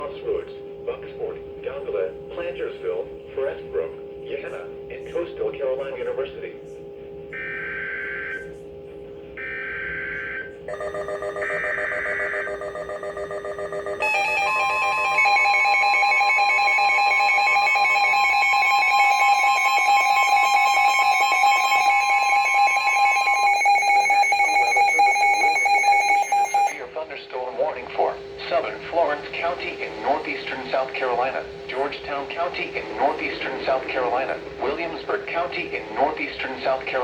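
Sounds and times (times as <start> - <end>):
loud steady alert tone: 9.4 - 26.9
data bursts: 9.4 - 27.0, 27.8 - 37.0
rapid beeping: 9.4 - 37.0.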